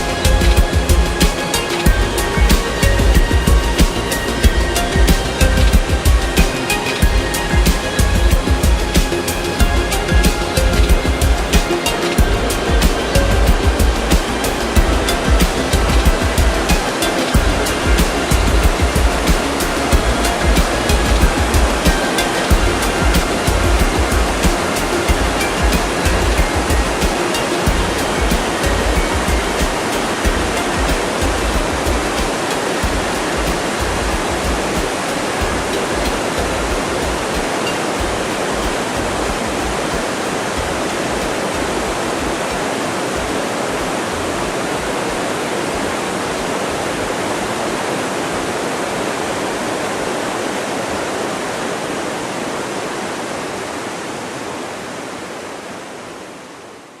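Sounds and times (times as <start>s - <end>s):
waterfall rushing: 0.0s - 57.0s
low rumble: 22.5s - 25.5s.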